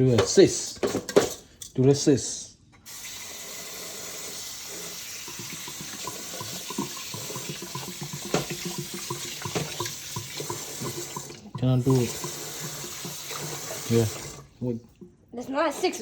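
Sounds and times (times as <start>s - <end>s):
tap running into sink: 4.8s - 15.1s.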